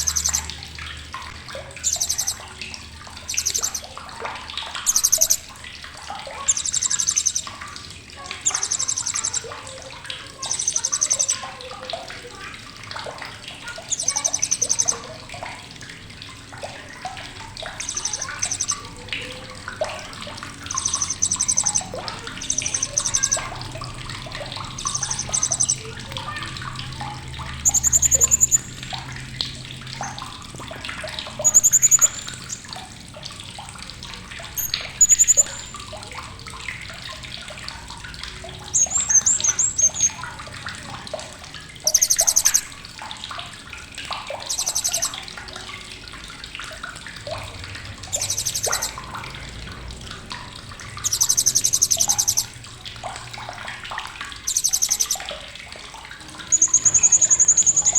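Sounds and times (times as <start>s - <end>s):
parrot trilled chirps: 0.0s - 0.5s, 1.8s - 2.4s, 3.3s - 3.9s, 4.9s - 5.5s, 6.4s - 7.5s, 8.4s - 9.4s, 10.4s - 11.4s, 13.9s - 15.0s, 17.8s - 18.8s, 20.7s - 23.5s, 24.8s - 25.8s, 27.6s - 28.8s, 31.4s - 32.7s, 34.6s - 35.7s, 38.7s - 40.1s, 41.9s - 42.7s, 44.5s - 45.1s, 48.1s - 49.0s, 51.0s - 52.5s, 54.4s - 55.2s, 56.5s - 57.9s
small splashing and clicking: 0.0s - 57.9s.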